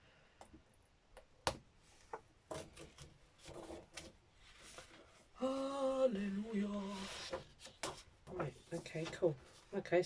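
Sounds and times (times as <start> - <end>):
person singing: 5.4 - 7.2.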